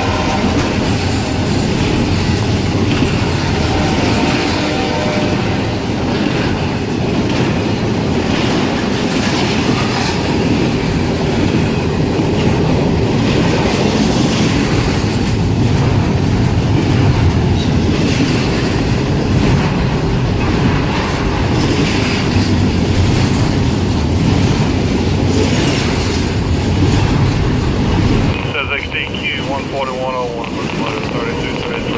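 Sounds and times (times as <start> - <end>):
freight train rumbling: 0.0 - 31.9
wheels clicking over rail joints: 6.1 - 28.3.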